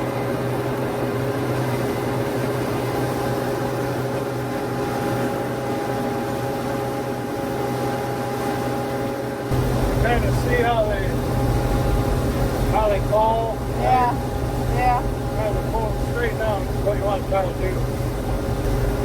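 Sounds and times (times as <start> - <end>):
combine harvester running: 8.8 - 19.0.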